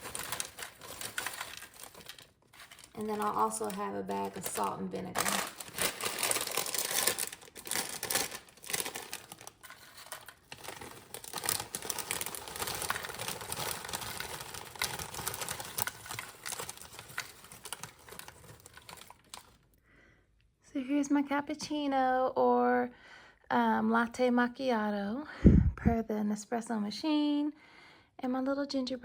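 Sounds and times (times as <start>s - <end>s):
chip bags crinkling: 0.0s - 19.7s.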